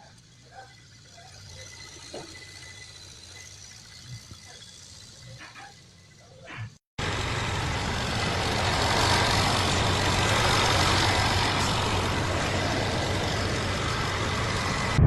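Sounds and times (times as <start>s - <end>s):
low engine hum: 7.0s - 15.0s
road and tyre rush: 7.0s - 15.0s.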